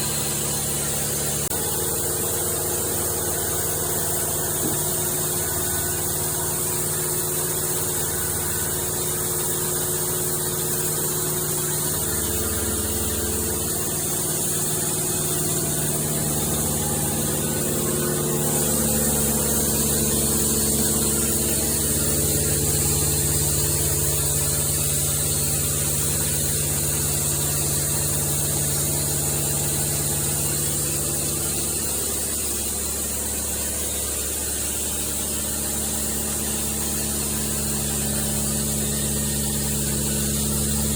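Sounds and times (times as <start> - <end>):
engine running: 0.0 - 40.9
steady high hiss: 11.7 - 40.9.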